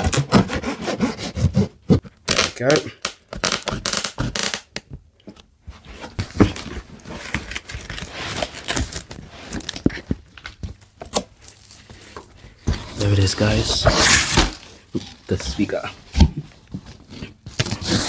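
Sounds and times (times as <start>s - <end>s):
packaging rustling and tearing: 6.2s - 11.9s, 13.0s - 15.3s.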